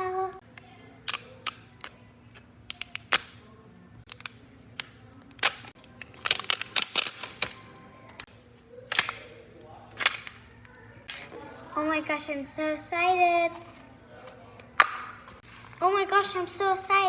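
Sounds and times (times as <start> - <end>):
plastic wrapping crinkling and tearing: 5.3 - 8.3.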